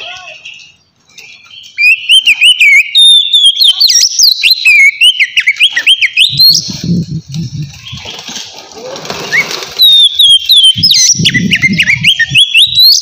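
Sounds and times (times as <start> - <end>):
bird singing whistled song: 0.0 - 6.8, 9.3 - 13.0.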